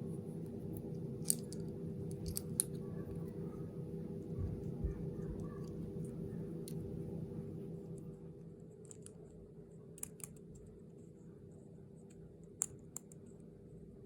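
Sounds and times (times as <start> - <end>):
faint steady hum: 0.0 - 14.0.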